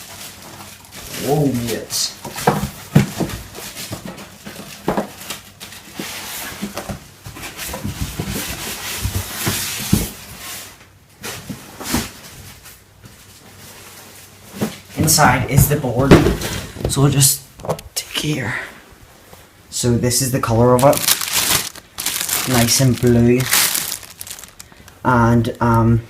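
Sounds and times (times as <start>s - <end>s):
packaging rustling and crinkling: 0.0s - 1.8s, 20.4s - 25.0s.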